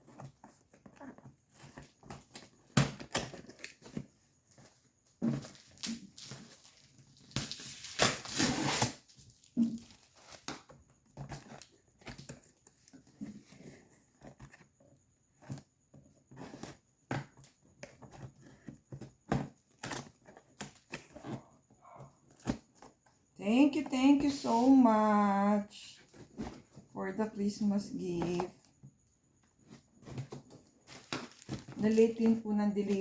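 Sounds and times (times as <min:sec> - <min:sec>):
packaging rustling and crinkling: 0:00.0 - 0:14.6, 0:29.6 - 0:33.0
packaging tearing and crumpling: 0:05.6 - 0:10.5.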